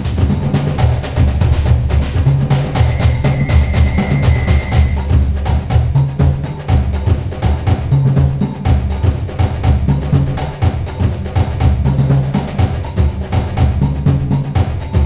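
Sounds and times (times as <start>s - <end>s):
music with fast percussion beat: 0.0s - 15.0s
bass line: 1.0s - 5.6s.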